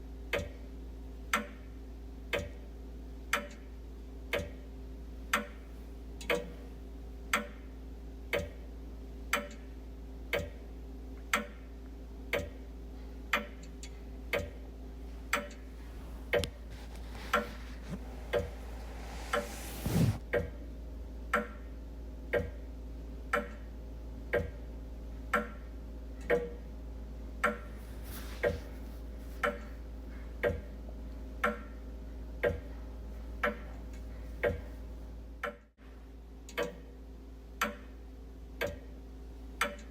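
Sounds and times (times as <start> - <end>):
wall clock ticking: 0.3 - 0.7, 1.3 - 1.7, 2.3 - 3.7, 4.3 - 4.7, 5.3 - 5.6, 6.2 - 6.6, 7.3 - 12.7, 13.3 - 16.7, 22.3 - 22.6, 23.3 - 23.7, 24.3 - 24.6, 25.3 - 26.7, 29.4 - 29.8, 30.4 - 30.8, 31.4 - 31.8, 32.4 - 32.7, 36.5 - 36.8, 38.6 - 38.9
low hum: 15.0 - 20.2.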